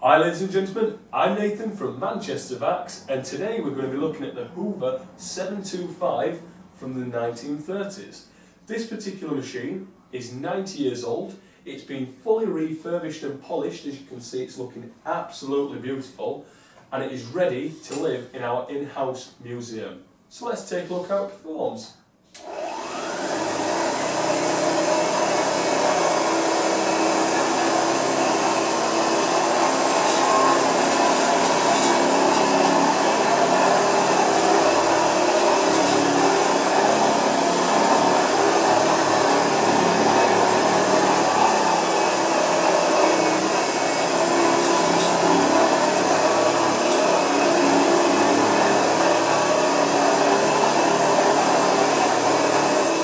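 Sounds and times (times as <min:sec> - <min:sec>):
vacuum cleaner running: 0:22.4 - 0:53.0.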